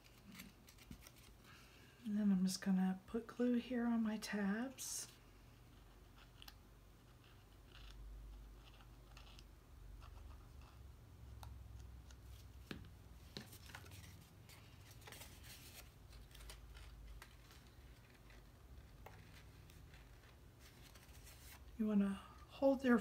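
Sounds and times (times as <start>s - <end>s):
paper rustling: 0.0s - 1.6s, 12.2s - 21.8s.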